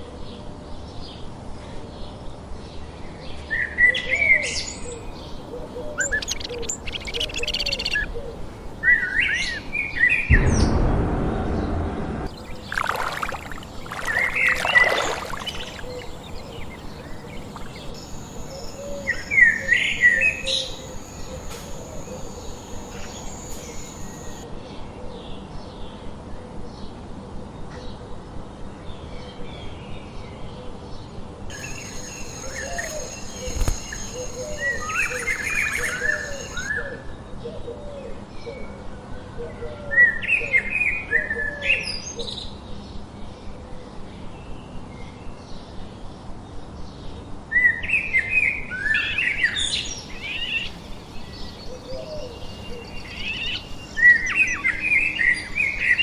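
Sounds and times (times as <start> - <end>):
songbirds singing: 2.0 - 10.3, 12.3 - 24.4, 48.9 - 56.0
lower bird call: 12.3 - 24.4, 48.9 - 56.0.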